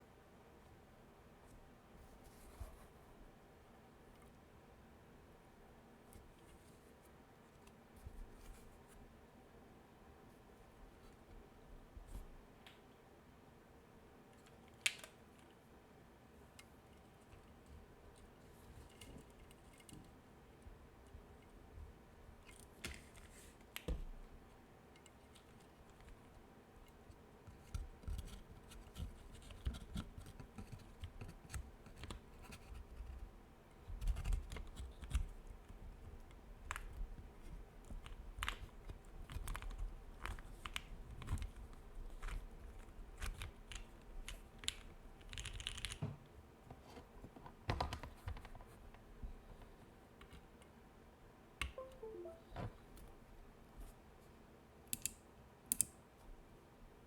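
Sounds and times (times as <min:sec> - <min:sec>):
air conditioner hum: 0:00.0 - 0:57.0
mechanical keyboard clacking: 0:43.3 - 0:46.0.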